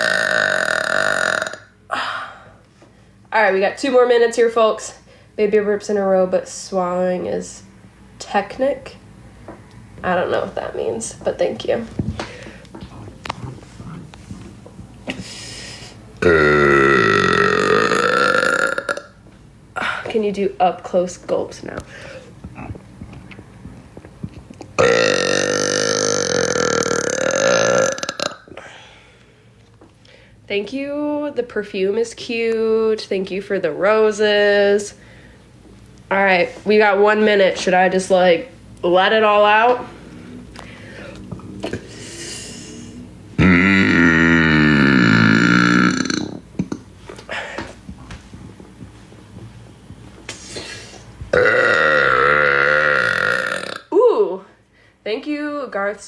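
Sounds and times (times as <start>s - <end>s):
woman burping: 0.0s - 2.2s, 16.2s - 19.2s, 24.8s - 28.7s, 43.4s - 46.8s, 51.3s - 54.1s.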